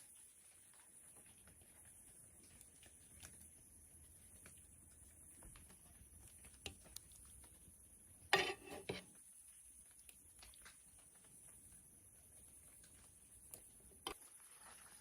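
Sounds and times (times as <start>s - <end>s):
kitchenware clattering: 8.4s - 9.0s.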